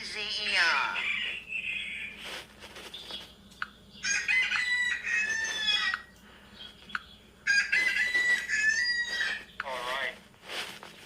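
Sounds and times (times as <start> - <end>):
rooster crowing: 4.0 - 6.1, 7.4 - 9.5.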